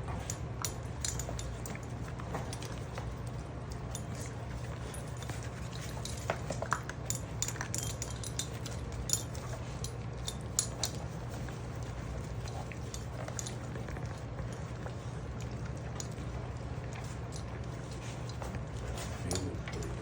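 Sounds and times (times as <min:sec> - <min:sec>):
steady low hum: 0:00.0 - 0:20.0
kibble clinking in bowl: 0:03.9 - 0:11.5, 0:18.9 - 0:20.0.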